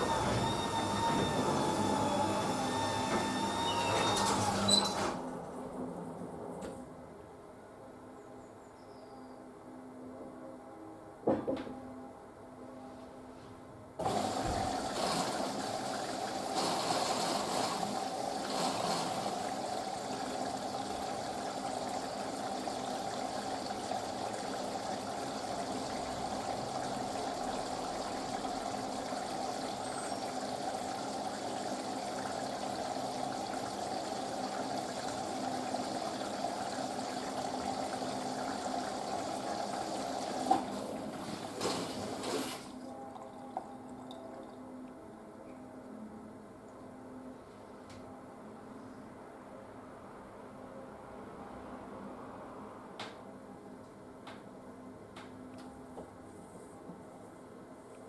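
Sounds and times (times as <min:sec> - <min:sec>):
water rushing into washing machine: 0:00.0 - 0:06.8, 0:14.0 - 0:44.4.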